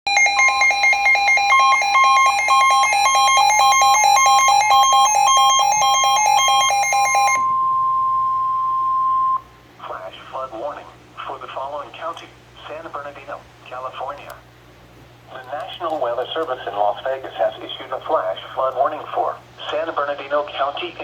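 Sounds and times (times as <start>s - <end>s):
harsh alarm beeping: 0.1s - 9.7s
steady warning tone: 0.1s - 10.3s.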